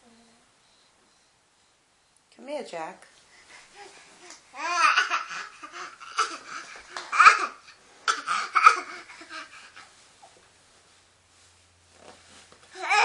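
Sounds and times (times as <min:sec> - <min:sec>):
baby laughing and babbling: 0:03.6 - 0:09.9, 0:12.8 - 0:13.0.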